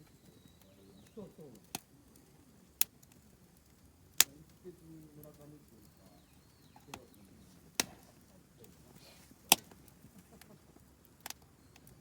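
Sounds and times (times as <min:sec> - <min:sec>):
campfire wood snapping: 0:00.0 - 0:12.0.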